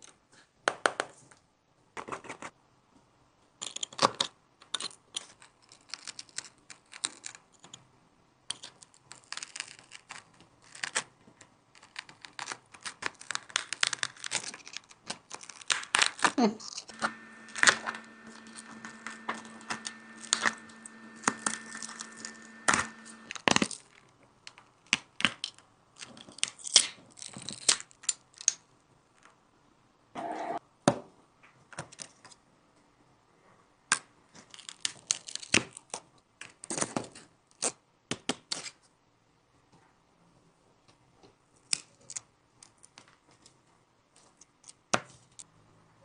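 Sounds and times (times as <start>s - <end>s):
steady hum: 16.9s - 23.4s.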